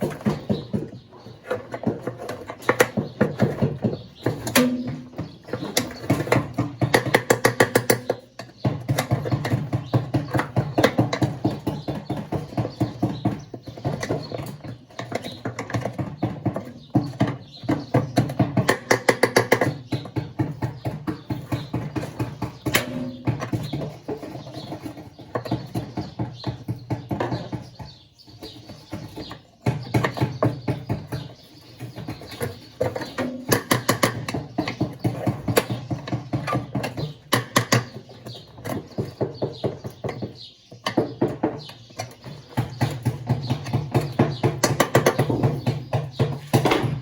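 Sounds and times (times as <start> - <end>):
tools clicking and knocking: 0.0 - 12.2, 28.4 - 47.0.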